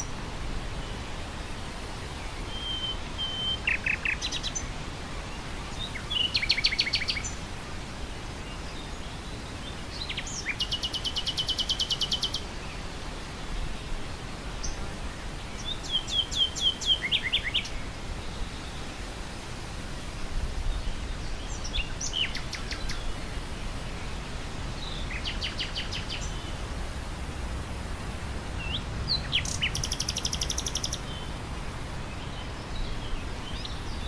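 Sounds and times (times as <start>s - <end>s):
wind through grass hiss: 0.0s - 34.0s
nightingale singing: 2.4s - 4.7s, 5.7s - 7.4s, 9.9s - 12.5s, 15.6s - 17.8s, 21.3s - 23.1s, 24.8s - 26.5s, 28.6s - 31.3s.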